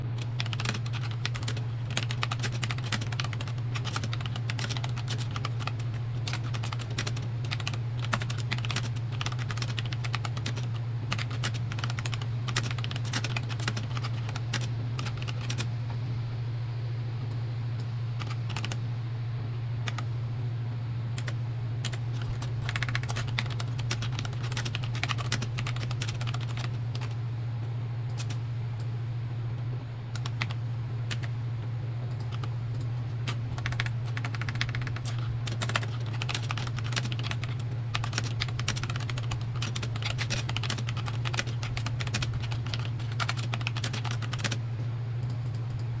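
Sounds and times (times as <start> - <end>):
steady low hum: 0.0 - 46.0
mechanical keyboard key clacks: 32.1 - 44.6.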